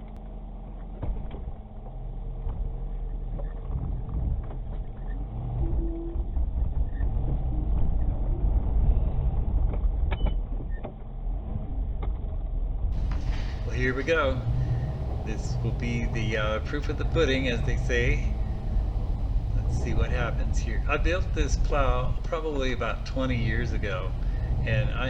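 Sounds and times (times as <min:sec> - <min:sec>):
small engine rumbling: 0:13.0 - 0:25.0.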